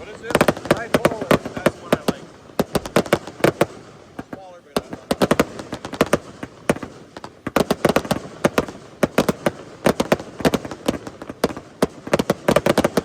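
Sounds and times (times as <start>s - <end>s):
fireworks cracking and banging: 0.0s - 13.0s.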